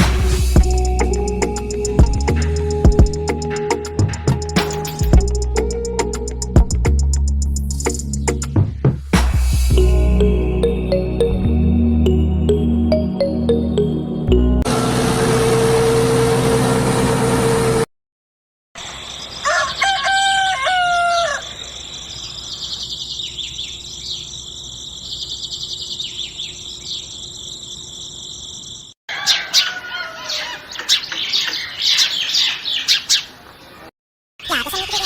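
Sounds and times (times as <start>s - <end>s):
birds chirping rapidly: 7.6s - 8.6s, 18.8s - 20.3s, 20.9s - 35.0s
rooster crowing: 19.3s - 21.9s, 29.1s - 30.8s.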